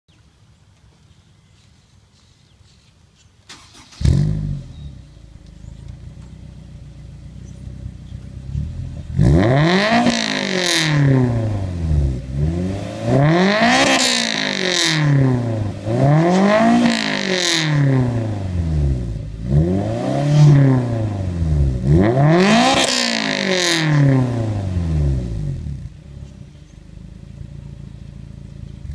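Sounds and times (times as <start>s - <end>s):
car engine starting: 3.5s - 28.9s
car engine idling: 3.6s - 9.8s, 24.3s - 28.9s
car engine revving: 3.6s - 28.9s.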